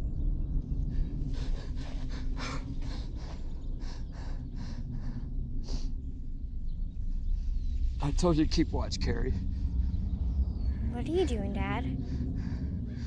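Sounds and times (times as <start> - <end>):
steady low rumble: 0.0 - 13.0
person breathing fast and heavily: 0.9 - 6.2, 9.3 - 13.0.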